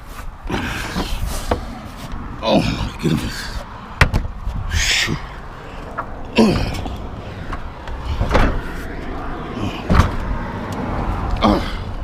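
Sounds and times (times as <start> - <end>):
scrap scraping and clunking: 0.0 - 2.4.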